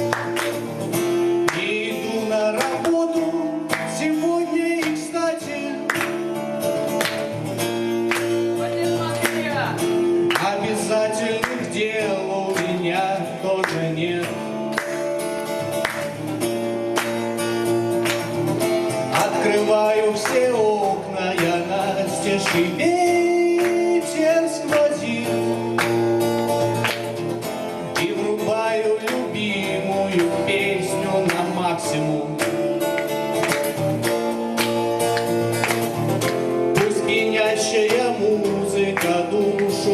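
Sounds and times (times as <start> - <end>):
strummed guitar: 0.0 - 39.9
man singing: 1.4 - 6.1, 10.2 - 14.8, 19.1 - 26.0, 27.8 - 32.8, 36.7 - 39.9.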